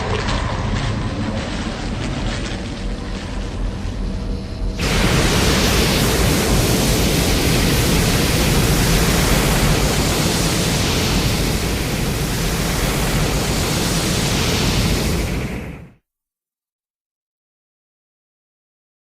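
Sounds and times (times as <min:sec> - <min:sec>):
loud rushing noise effect: 0:03.5 - 0:16.0.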